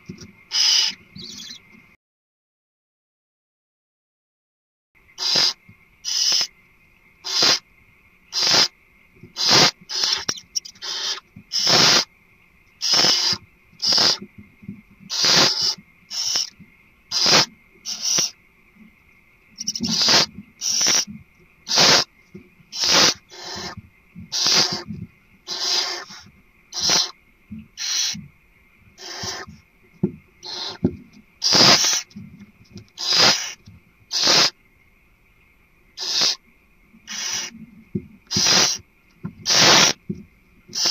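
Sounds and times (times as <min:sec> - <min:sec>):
barn owl hissing calls: 0:00.0 - 0:01.7, 0:05.2 - 0:06.6, 0:07.2 - 0:07.7, 0:08.3 - 0:12.1, 0:12.8 - 0:14.3, 0:15.1 - 0:18.4, 0:19.6 - 0:27.2, 0:27.8 - 0:28.3, 0:29.0 - 0:29.5, 0:30.4 - 0:32.2, 0:33.0 - 0:34.6, 0:36.0 - 0:36.4, 0:37.0 - 0:37.6, 0:38.3 - 0:40.0
sharp clicks: 0:08.4 - 0:14.3, 0:17.2 - 0:18.4.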